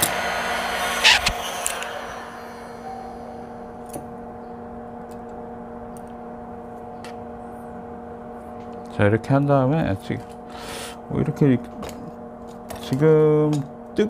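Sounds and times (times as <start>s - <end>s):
small electric fan humming: 0.0s - 14.0s.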